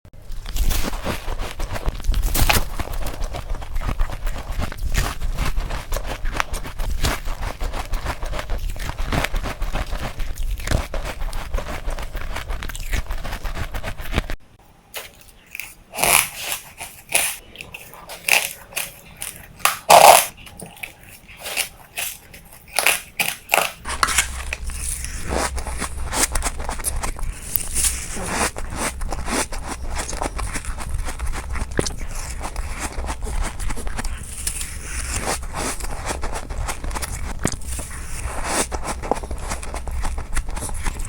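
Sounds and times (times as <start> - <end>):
ice crunching: 15.0 - 39.9
low hum: 23.8 - 33.0.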